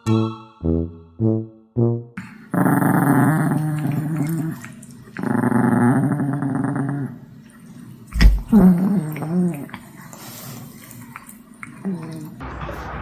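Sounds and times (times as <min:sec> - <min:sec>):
dog growling: 0:02.5 - 0:07.3, 0:08.2 - 0:09.8
thump: 0:12.4 - 0:13.0.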